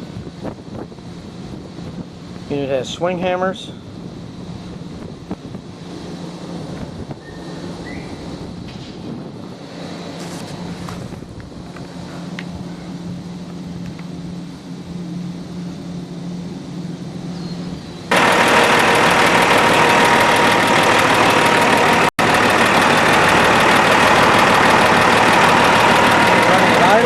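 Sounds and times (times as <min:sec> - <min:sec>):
diesel engine running: 0:18.1 - 0:27.0.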